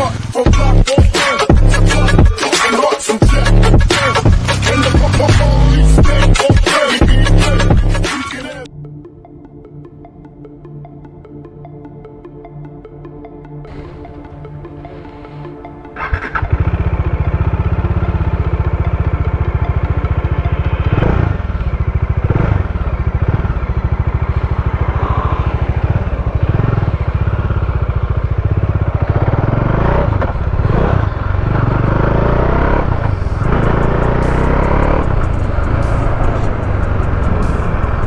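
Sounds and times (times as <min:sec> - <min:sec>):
motorcycle engine running: 0:00.0 - 0:02.5, 0:03.2 - 0:08.0, 0:13.7 - 0:38.0.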